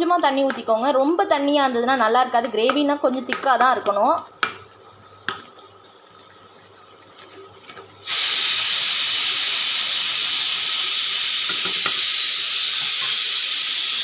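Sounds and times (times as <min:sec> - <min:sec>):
pressure cooker steam hiss: 0:08.0 - 0:14.0.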